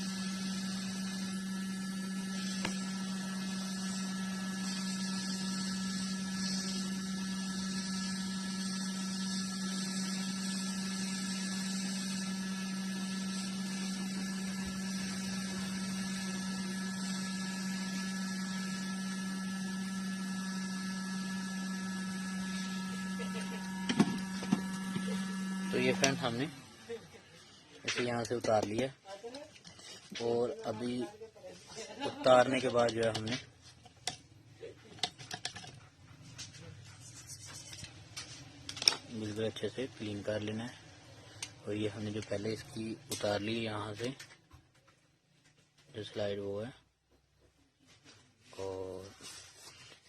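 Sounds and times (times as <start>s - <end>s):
hot air blower hissing: 0.0s - 27.8s.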